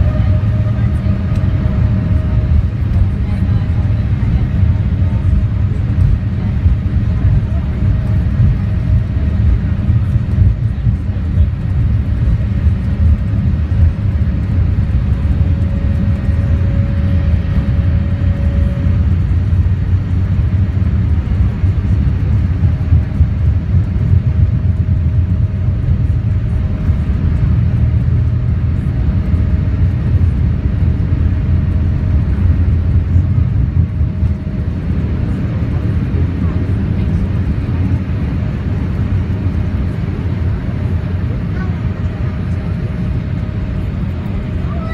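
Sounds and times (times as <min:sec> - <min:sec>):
airplane cabin engine rumble: 0:00.0 - 0:44.9.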